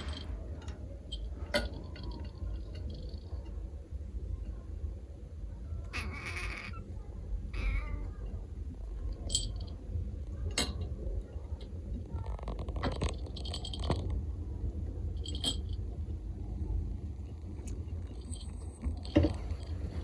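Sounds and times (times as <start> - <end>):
kitten giving husky cries: 5.9 - 8.3.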